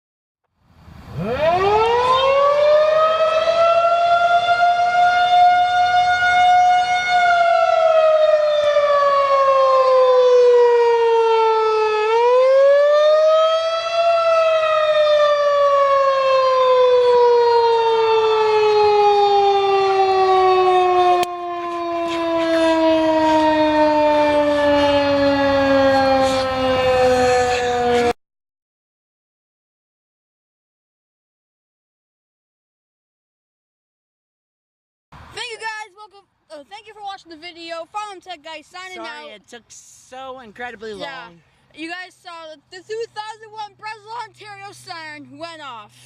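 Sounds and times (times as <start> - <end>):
warning siren wailing: 1.1 - 28.2, 38.8 - 39.3, 42.0 - 45.7.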